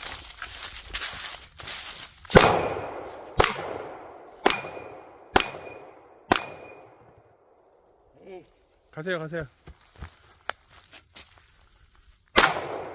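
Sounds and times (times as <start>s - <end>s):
steel targets ringing: 2.3s - 3.8s, 4.4s - 7.0s
pistol shots: 2.3s - 7.0s, 12.4s - 12.9s.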